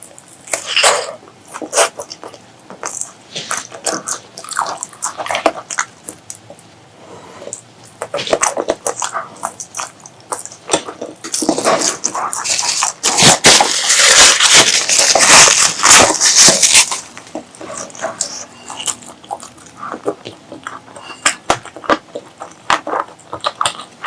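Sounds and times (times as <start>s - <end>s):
wet chewing and lip smacks: 13.9s - 24.0s.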